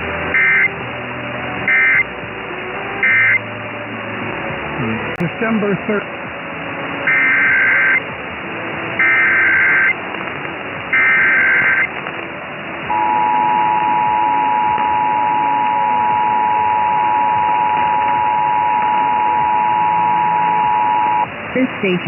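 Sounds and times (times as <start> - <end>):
digital data tone bursts: 0.3 - 0.7, 1.7 - 2.0, 3.0 - 3.4, 7.1 - 8.0, 9.0 - 10.0, 10.9 - 11.9, 12.9 - 21.3
two-tone attention signal: 0.3 - 0.7, 1.7 - 2.1, 3.0 - 3.4, 7.1 - 8.0, 9.0 - 10.0, 10.9 - 11.9, 12.9 - 21.3
radio hiss: 2.8 - 3.5, 4.8 - 8.2, 8.9 - 22.0.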